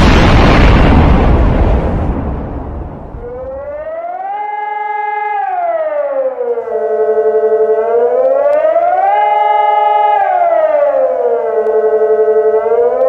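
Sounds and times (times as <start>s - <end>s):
steady siren tone: 2.8s - 13.0s
civil defense siren wailing: 3.1s - 13.0s.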